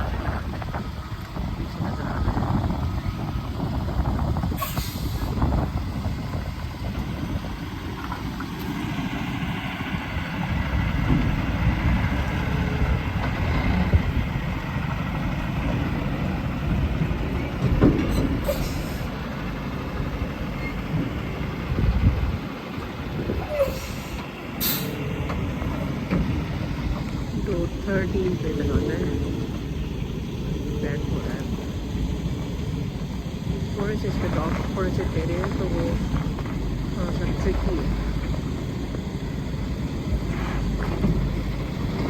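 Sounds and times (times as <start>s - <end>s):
truck diesel engine rumbling: 0.0s - 42.0s
air hissing: 23.5s - 25.0s.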